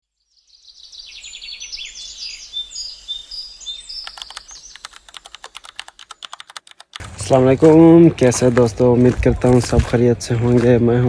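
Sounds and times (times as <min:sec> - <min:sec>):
small birds chirping and trilling: 0:00.1 - 0:06.4
rapid keyboard-like clicking: 0:04.0 - 0:07.3.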